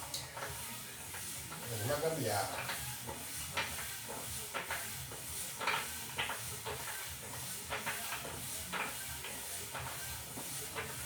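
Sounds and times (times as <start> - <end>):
exercise bike scraping click: 1.1 - 4.9.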